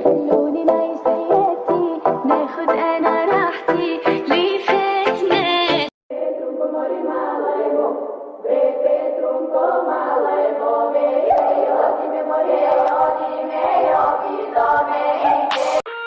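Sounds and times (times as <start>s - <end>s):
chant-like singing voices: 5.7s - 15.8s.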